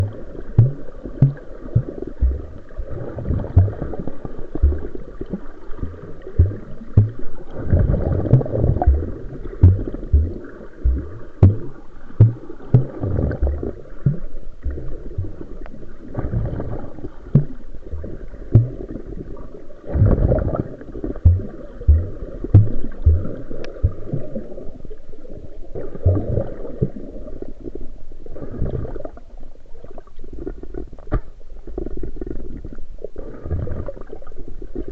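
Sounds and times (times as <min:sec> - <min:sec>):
low thumps: 0:00.0 - 0:02.6, 0:03.4 - 0:04.0, 0:04.6 - 0:05.0, 0:05.8 - 0:15.5, 0:17.3 - 0:18.9, 0:21.2 - 0:24.2
sea water sloshing and gurgling: 0:00.0 - 0:34.9.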